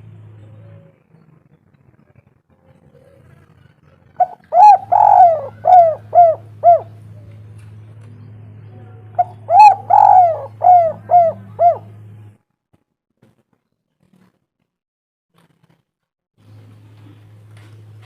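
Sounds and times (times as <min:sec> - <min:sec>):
dove cooing: 0:04.2 - 0:07.5, 0:09.2 - 0:12.1.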